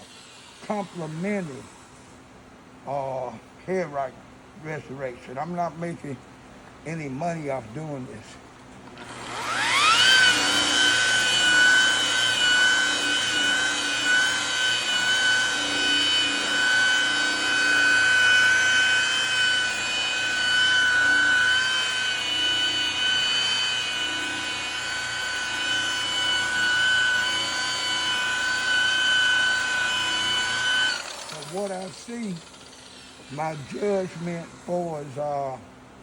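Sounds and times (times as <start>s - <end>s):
rotary buffer high-pitched whine: 9.3s - 35.8s.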